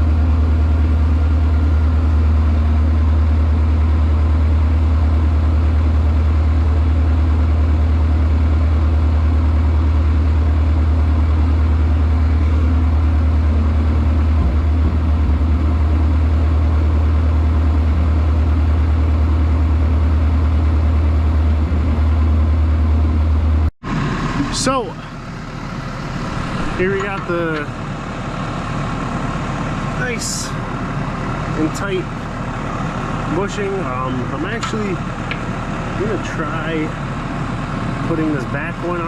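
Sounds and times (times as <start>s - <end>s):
tractor engine idling: 0.0s - 39.0s.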